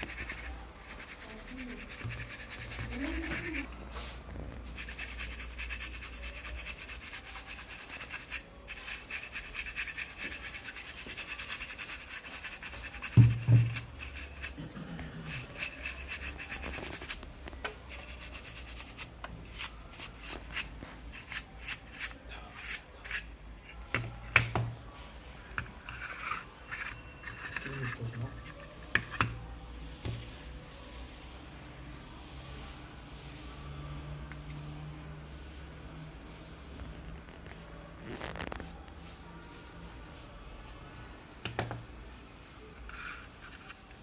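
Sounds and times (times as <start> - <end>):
hand rubbing and scratching: 0.0 - 14.6, 15.2 - 17.2, 17.9 - 23.3, 37.3 - 40.3
knock: 13.2 - 13.8.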